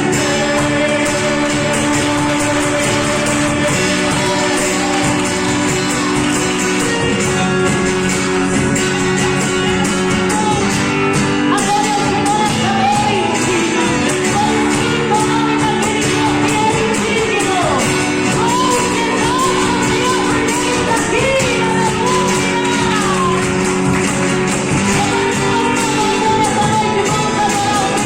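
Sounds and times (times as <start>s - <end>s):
lead voice singing: 0.0s - 28.0s
worship band playing: 0.0s - 28.0s.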